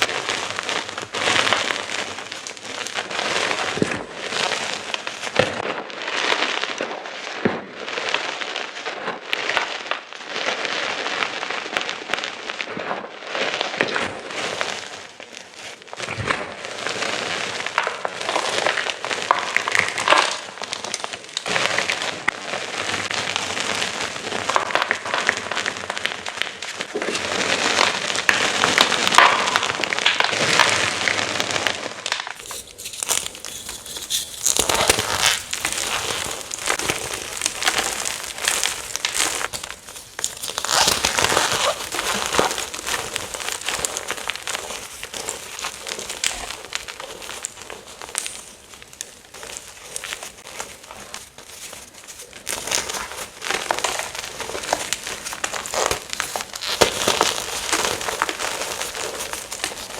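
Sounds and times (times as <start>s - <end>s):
chalk crunching and crackling: 32.4s - 59.9s.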